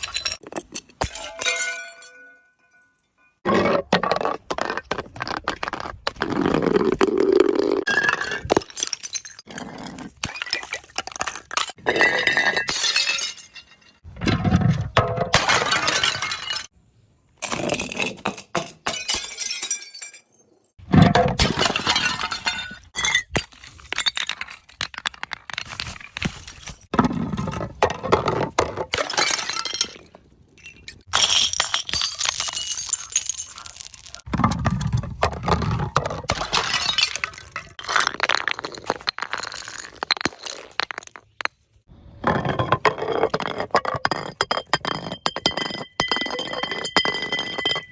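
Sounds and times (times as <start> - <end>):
glass bottles breaking: 0.0 - 3.9, 10.2 - 14.1, 15.1 - 16.8, 17.5 - 26.9, 28.8 - 34.3, 36.2 - 41.7, 42.3 - 47.9.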